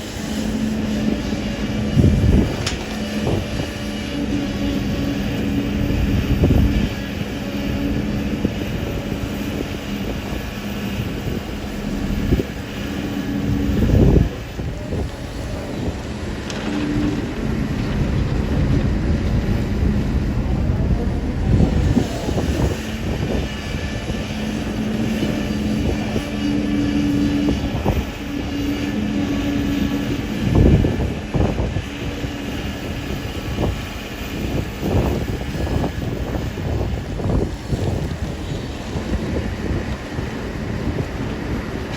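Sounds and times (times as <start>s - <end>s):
excavator diesel engine running: 0.0s - 41.9s
steady whine: 0.0s - 41.9s.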